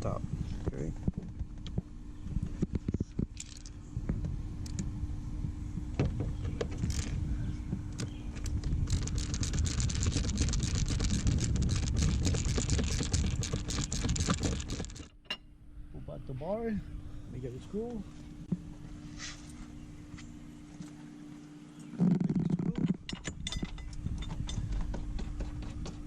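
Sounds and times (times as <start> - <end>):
steady low hum: 0.0 - 26.0
metal tools clinking and rattling: 22.8 - 24.8.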